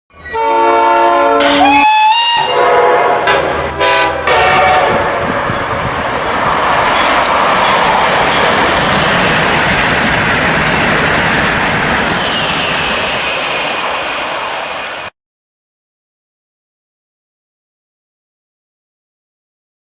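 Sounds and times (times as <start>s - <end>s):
train whistle chords: 0.3s - 5.6s
steady rushing hiss: 2.4s - 15.1s.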